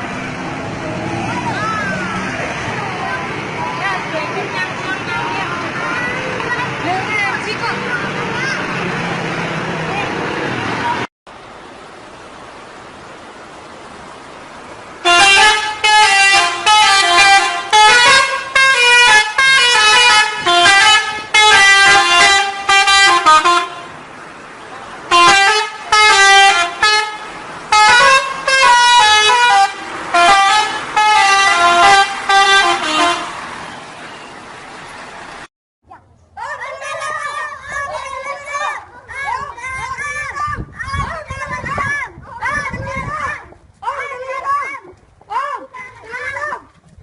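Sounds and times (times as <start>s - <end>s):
multi-tone musical bus horn: 15.0s - 24.0s, 25.1s - 34.4s.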